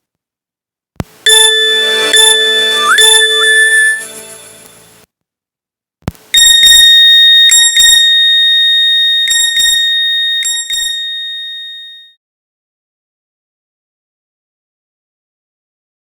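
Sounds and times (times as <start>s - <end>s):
phone ringtone: 1.3s - 4.9s
short beeps: 1.3s - 4.9s.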